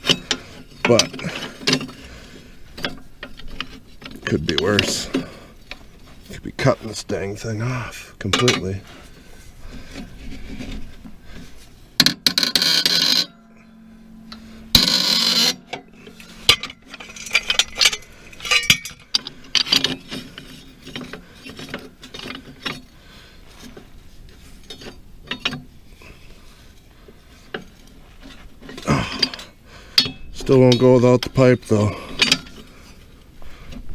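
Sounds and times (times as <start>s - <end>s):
metal tools clinking: 0.0s - 2.1s, 2.7s - 6.5s, 7.1s - 9.1s, 9.9s - 23.0s, 27.4s - 33.1s
stuck bolt grinding screech: 0.0s - 8.8s, 9.6s - 23.8s, 27.4s - 33.2s.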